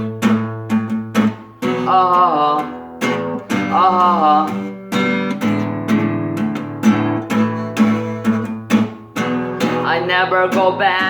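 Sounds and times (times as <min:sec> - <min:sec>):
strummed guitar chords: 0:00.0 - 0:11.0
person singing: 0:01.6 - 0:04.8, 0:09.5 - 0:11.0.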